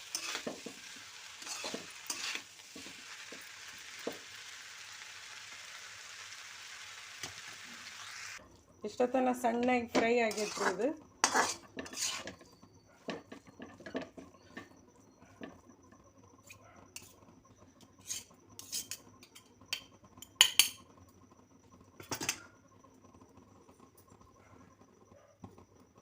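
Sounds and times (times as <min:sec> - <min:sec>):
spatula scraping a pan: 0:00.0 - 0:04.5, 0:09.9 - 0:14.8, 0:17.8 - 0:19.4.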